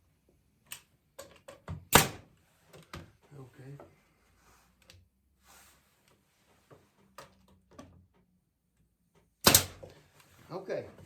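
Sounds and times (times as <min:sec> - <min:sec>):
sharp loud knock: 0:09.4 - 0:09.8
knocks of wooden parts: 0:09.4 - 0:10.0.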